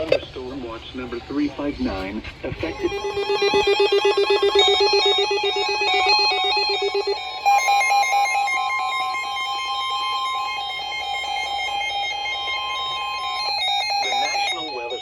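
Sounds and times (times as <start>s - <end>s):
steady alert tone: 2.7s - 11.4s
pulsing electronic alert tone: 2.7s - 14.8s.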